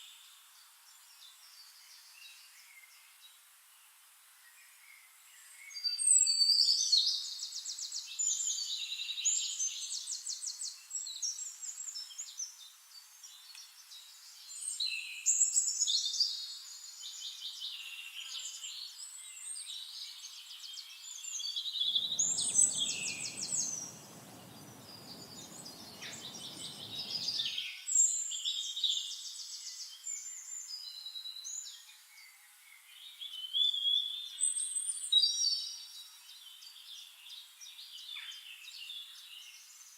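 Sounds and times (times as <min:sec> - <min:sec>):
songbird trills and whistles: 0:21.7 - 0:27.6
low rushing noise: 0:21.9 - 0:27.6.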